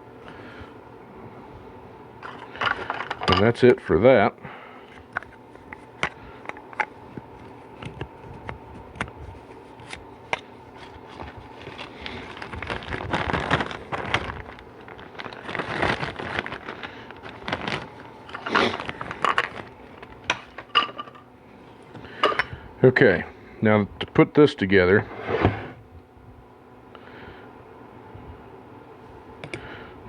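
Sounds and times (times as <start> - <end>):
metal parts scraping and rustling: 2.2 - 3.6, 15.2 - 21.2.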